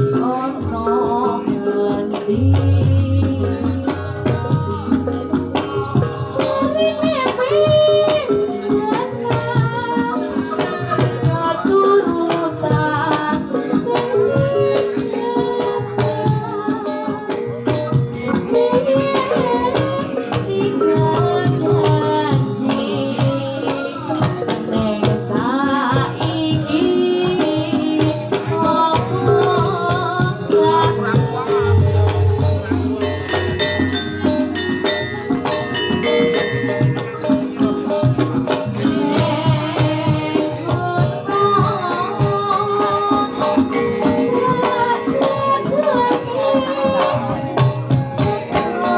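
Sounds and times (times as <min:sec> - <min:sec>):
hand drum strokes: 0:01.9 - 0:48.9
sustained metallophone tones: 0:02.3 - 0:08.7, 0:27.4 - 0:48.9
woman singing wavering line: 0:26.4 - 0:48.9.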